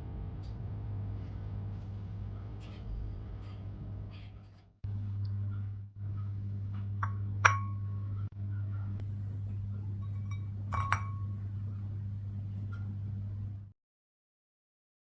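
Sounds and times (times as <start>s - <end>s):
glass clinks: 7.0s - 7.8s, 9.0s - 13.6s
low hum: 9.0s - 13.7s.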